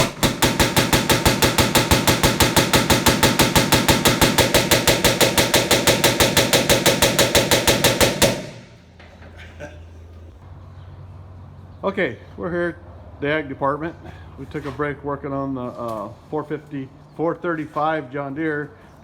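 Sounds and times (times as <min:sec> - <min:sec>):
diesel tractor engine popping: 0:00.0 - 0:09.2.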